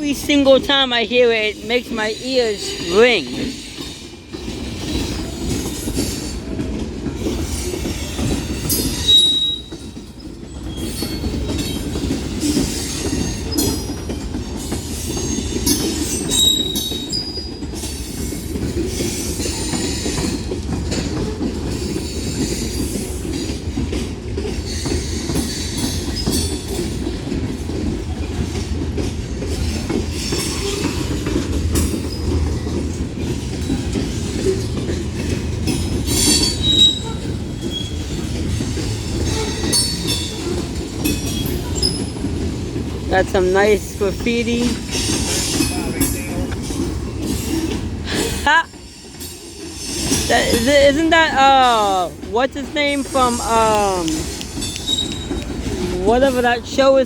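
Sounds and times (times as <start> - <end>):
clickety-clack over rail joints: 0.0 - 57.0
train wheels rumbling on rails: 0.0 - 57.0
high-pitched brake squeals: 8.7 - 9.8, 15.2 - 17.6, 36.1 - 38.0, 54.6 - 55.5.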